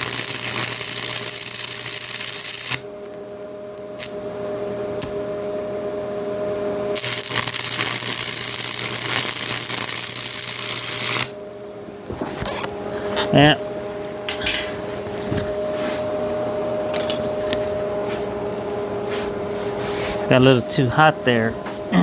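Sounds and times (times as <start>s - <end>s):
arc welding crackling hiss: 0.0s - 4.2s, 6.9s - 11.4s
low electrical hum: 0.0s - 22.0s.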